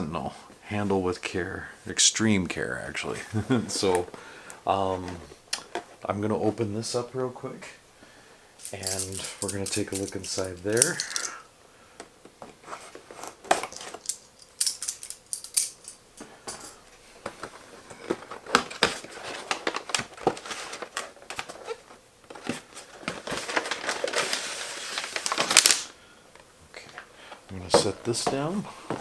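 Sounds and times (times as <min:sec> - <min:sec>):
packaging crinkling: 0:08.6 - 0:11.4, 0:18.3 - 0:26.0.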